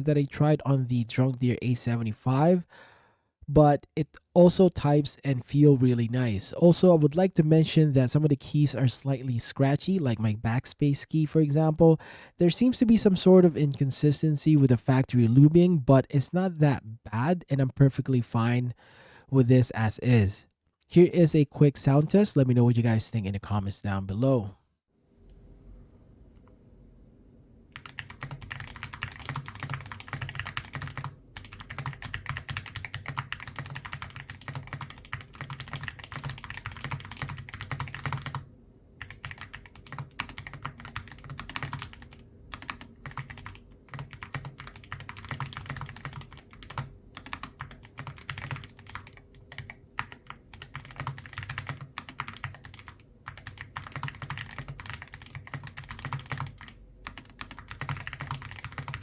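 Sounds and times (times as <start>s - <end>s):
keyboard typing clatter: 27.8s - 38.4s, 39.0s - 59.0s.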